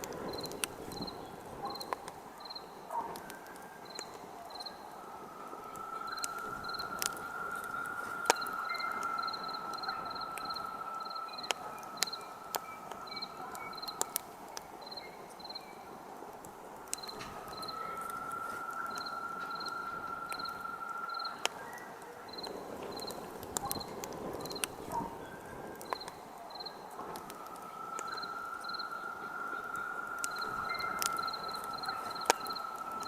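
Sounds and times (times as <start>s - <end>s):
campfire crackling and popping: 0.0s - 33.0s
crickets chirping: 0.0s - 33.0s
high whistling tone: 3.3s - 14.1s, 17.0s - 23.2s, 26.8s - 33.0s.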